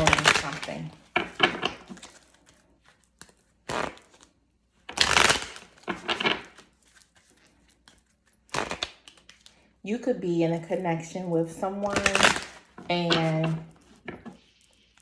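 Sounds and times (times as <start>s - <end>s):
cards being shuffled: 4.9s - 9.5s, 11.8s - 14.6s.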